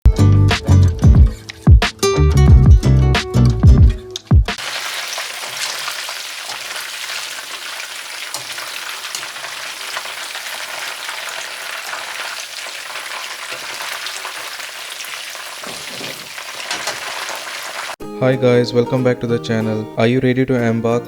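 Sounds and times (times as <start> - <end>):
chicken frying in hot oil: 4.6 - 18.0.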